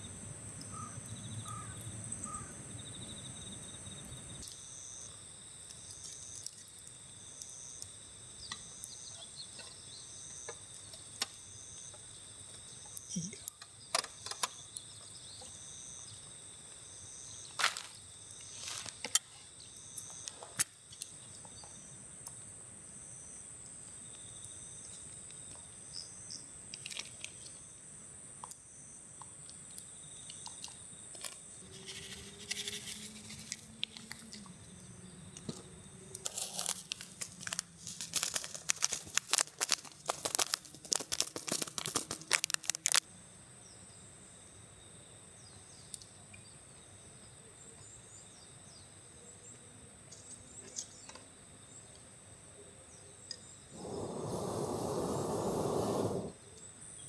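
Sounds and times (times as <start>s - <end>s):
crackling crinkling clicks: 36.2s - 43.1s.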